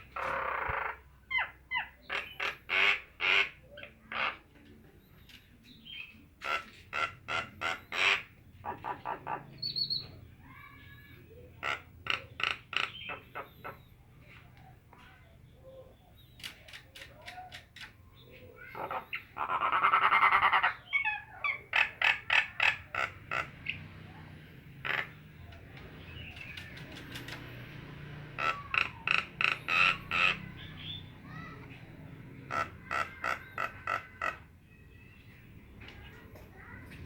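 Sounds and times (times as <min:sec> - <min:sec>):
bird harsh rasping call: 0:00.0 - 0:04.4, 0:05.9 - 0:10.1, 0:10.8 - 0:13.9, 0:18.6 - 0:23.9, 0:24.7 - 0:27.6, 0:28.3 - 0:31.6, 0:32.4 - 0:34.5.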